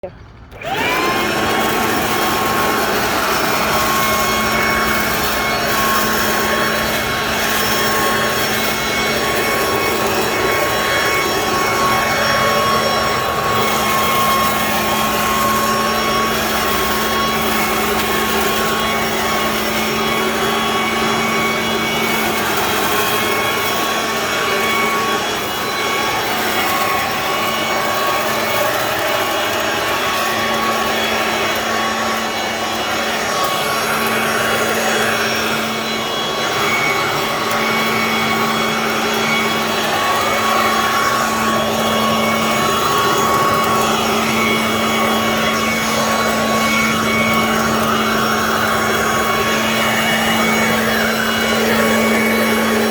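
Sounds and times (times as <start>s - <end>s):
garden vacuum running: 0.0s - 52.9s.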